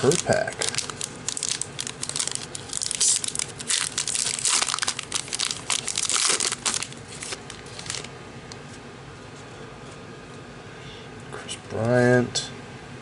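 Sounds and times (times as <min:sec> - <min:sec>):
plastic wrapper crinkling and tearing: 0:00.0 - 0:08.1.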